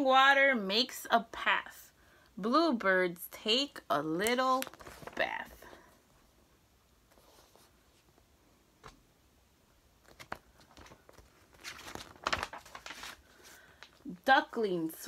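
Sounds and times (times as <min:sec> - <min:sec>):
paper pages crinkling and rustling: 0:04.5 - 0:05.7, 0:10.0 - 0:14.1.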